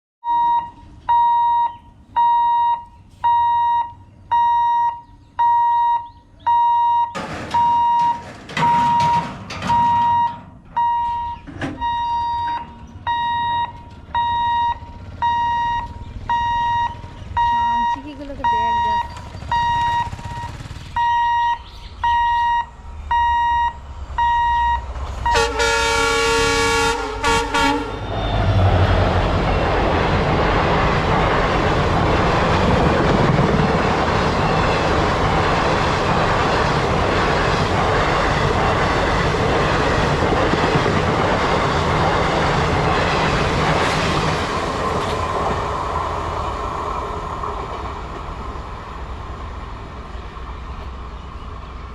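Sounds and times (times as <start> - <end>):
level crossing warning beeper: 0.2 - 29.9
train passing: 0.7 - 51.9
diesel locomotive horn: 24.5 - 29.5.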